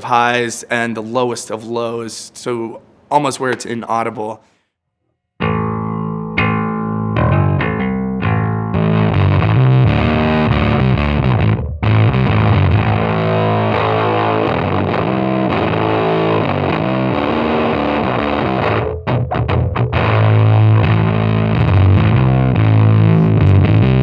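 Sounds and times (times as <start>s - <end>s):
distorted electric bass: 5.4s - 24.0s.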